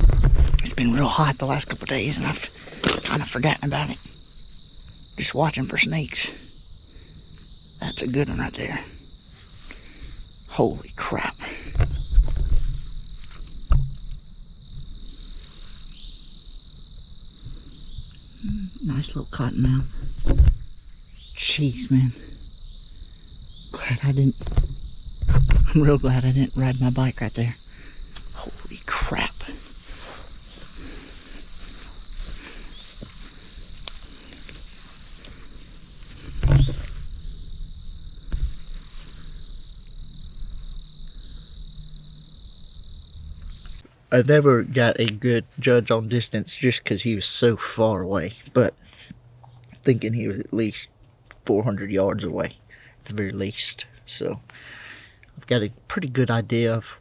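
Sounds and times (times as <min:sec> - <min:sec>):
dull low thumps: 0:00.0 - 0:01.2, 0:11.7 - 0:15.1, 0:24.3 - 0:27.0, 0:28.0 - 0:43.8
insects trilling: 0:00.0 - 0:57.0
loud thump: 0:11.8 - 0:12.9, 0:13.7 - 0:14.2, 0:24.4 - 0:25.8, 0:36.3 - 0:38.8.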